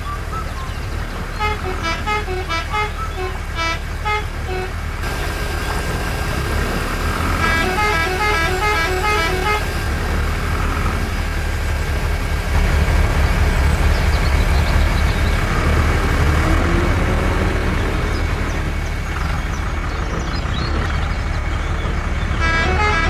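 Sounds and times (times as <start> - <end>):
low vehicle engine rumble: 0.0 - 23.0
musical horn playing tune: 1.4 - 11.1, 22.4 - 23.0.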